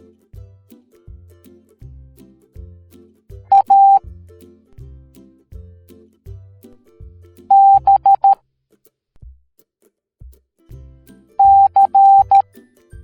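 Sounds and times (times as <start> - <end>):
children's music with bass line: 0.0 - 8.4, 10.2 - 13.0
morse code beeps: 3.5 - 4.0, 7.5 - 8.4, 11.4 - 12.4.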